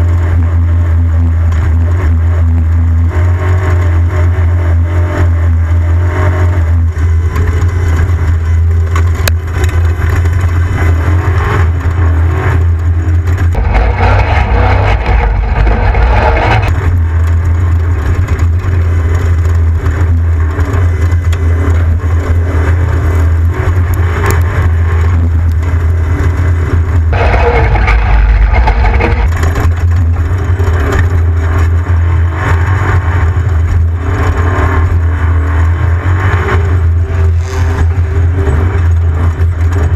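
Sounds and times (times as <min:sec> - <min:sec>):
race vehicle engine running hard: 0:00.0 - 0:39.9.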